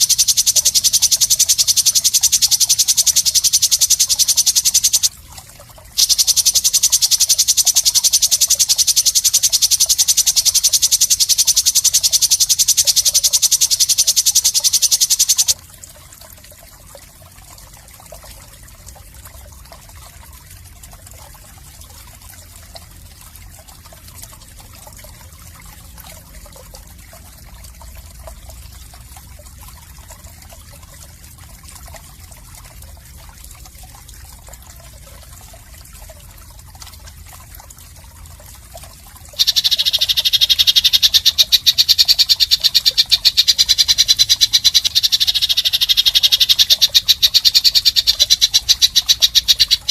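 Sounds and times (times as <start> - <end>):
harsh rattling animal call: 0.0 - 5.1, 6.0 - 15.6, 39.4 - 49.9.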